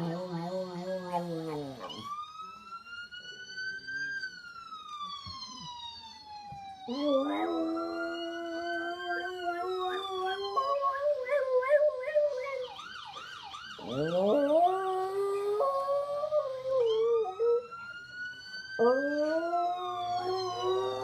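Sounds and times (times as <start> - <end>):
dog howling: 0.0 - 2.1, 6.9 - 12.8, 13.8 - 17.6, 18.8 - 21.0
ambulance siren warbling: 0.0 - 21.0.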